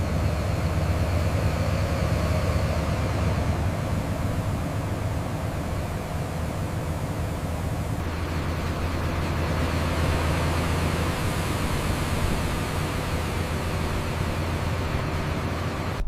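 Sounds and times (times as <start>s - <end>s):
heavy engine running: 0.0s - 16.0s.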